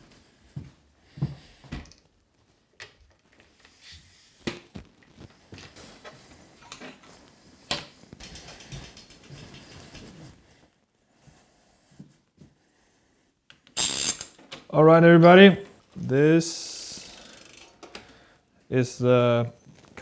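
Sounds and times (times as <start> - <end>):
rapid ratchet clicking: 13.8 - 14.4, 16.7 - 17.9.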